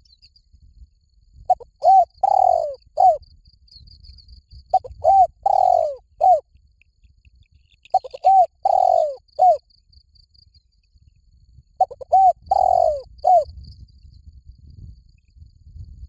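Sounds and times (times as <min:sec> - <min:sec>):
dove cooing: 0:01.5 - 0:03.2, 0:04.7 - 0:06.4, 0:07.9 - 0:09.6, 0:11.8 - 0:13.5.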